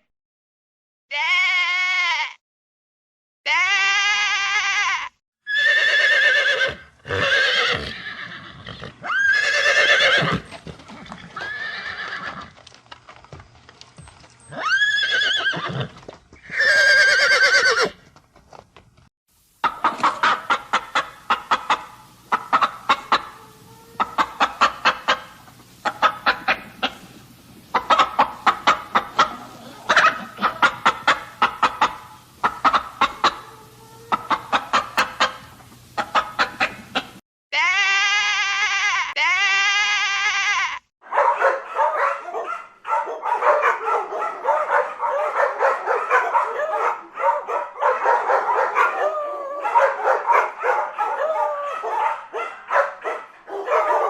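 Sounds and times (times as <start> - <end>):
drawn-out animal cries: 3.5 - 13.3, 14.0 - 18.0
fast clucking: 19.6 - 23.3, 24.0 - 33.5, 34.1 - 37.2.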